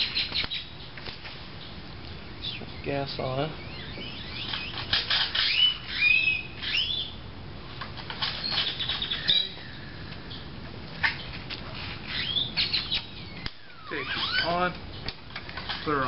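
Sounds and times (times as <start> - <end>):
small birds chirping: 0.0 - 16.0
sharp clicks: 12.9 - 15.9.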